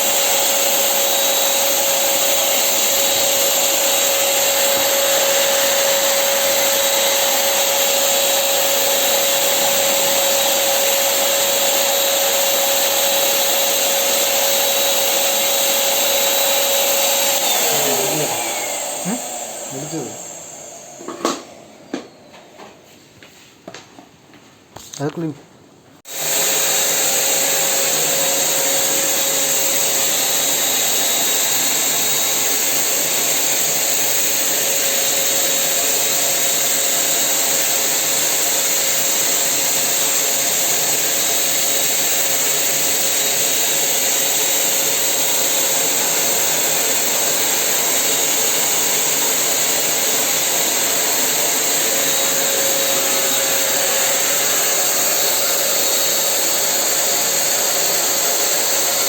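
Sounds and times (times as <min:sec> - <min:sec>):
power tool running: 0:00.0 - 0:22.4, 0:26.1 - 0:59.0.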